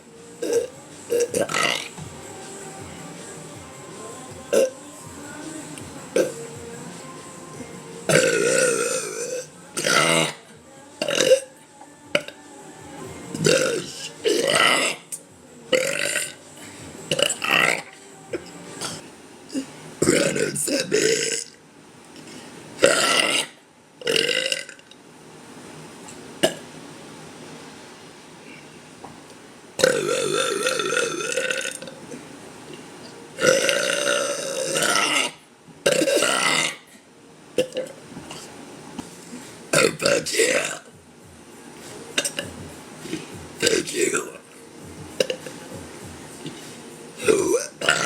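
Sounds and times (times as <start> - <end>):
woman burping: 0.4 - 2.0, 4.5 - 4.8, 6.2 - 6.4, 8.1 - 10.4, 11.0 - 11.5, 13.4 - 15.2, 15.8 - 16.4, 18.8 - 21.5, 29.8 - 31.9, 33.4 - 36.9, 39.7 - 40.9, 47.2 - 48.0.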